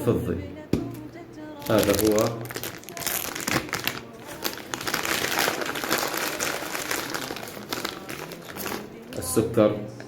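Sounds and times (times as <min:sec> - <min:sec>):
packet crinkling: 0:01.6 - 0:09.4.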